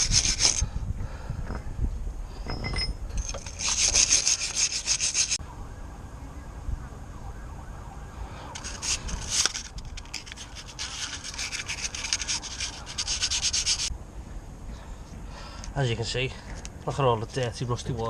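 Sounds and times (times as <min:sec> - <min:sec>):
sandpaper scraping metal: 0:00.0 - 0:00.6, 0:03.3 - 0:05.4, 0:08.6 - 0:13.9.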